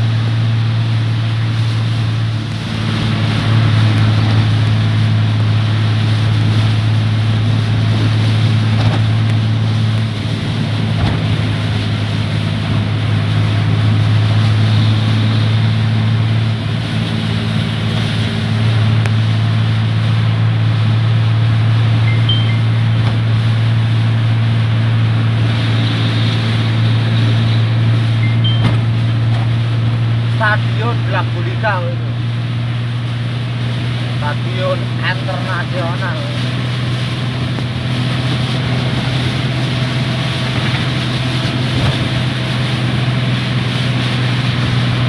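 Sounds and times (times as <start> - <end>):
heavy rain: 0.0 - 33.2
constant low hum: 0.0 - 45.0
strong wind: 0.0 - 45.0.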